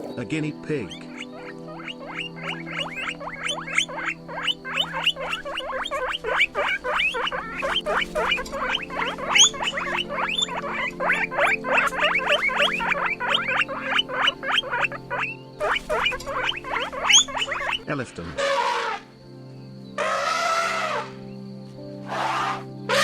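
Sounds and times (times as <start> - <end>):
guinea pig squeaking: 0.8 - 18.8.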